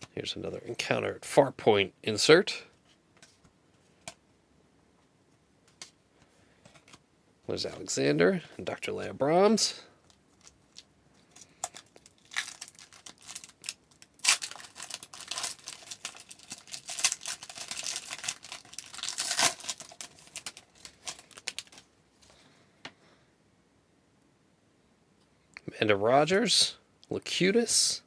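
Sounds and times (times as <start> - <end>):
wrapper tearing and crinkling: 10.4 - 21.9.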